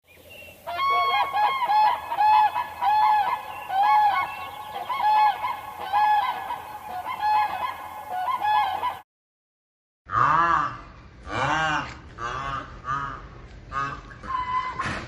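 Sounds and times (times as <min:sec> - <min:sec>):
bird honking: 0:00.5 - 0:09.0.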